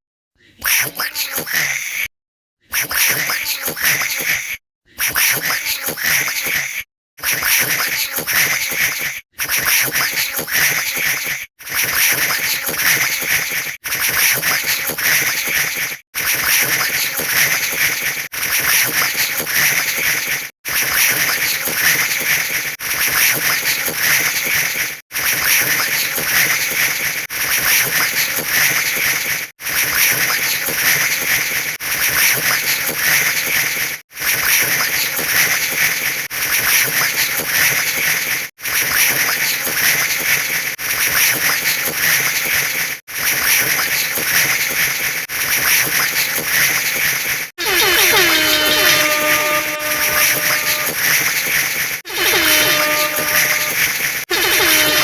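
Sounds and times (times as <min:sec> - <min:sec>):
synthetic crackling clatter: 0:07.2 - 0:55.0
buzzing mix of sound effects: 0:47.6 - 0:55.0.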